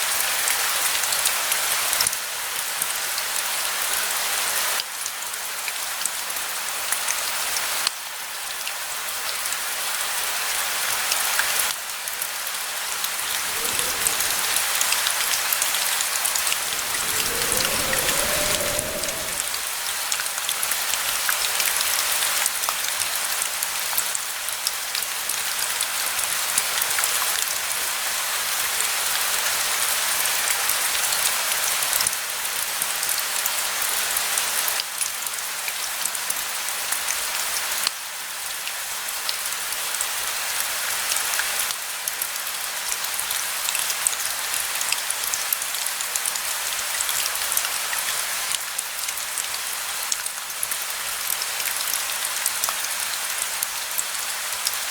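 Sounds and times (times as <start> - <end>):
steady rain falling: 12.4 - 20.1.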